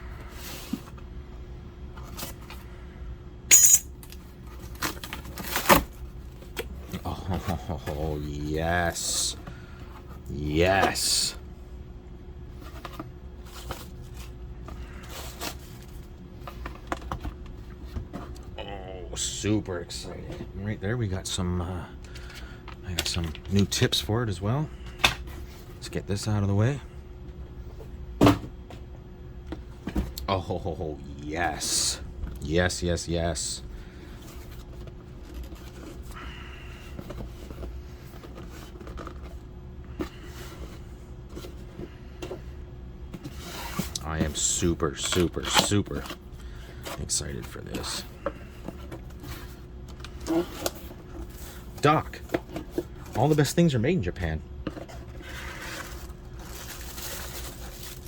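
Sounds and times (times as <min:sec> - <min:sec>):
steady low hum: 0:00.0 - 0:58.0
packaging rustling and scraping: 0:04.1 - 0:08.2, 0:12.5 - 0:18.4, 0:34.0 - 0:42.4, 0:43.2 - 0:53.6, 0:54.6 - 0:58.0
packaging rustling: 0:54.8 - 0:58.0.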